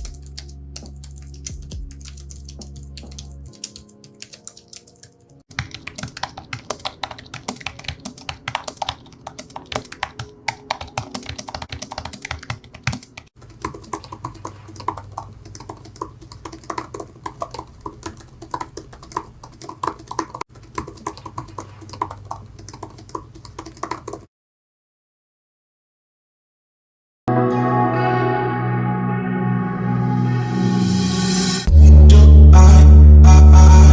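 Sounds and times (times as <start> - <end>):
fast keyboard typing: 0.0 - 24.3.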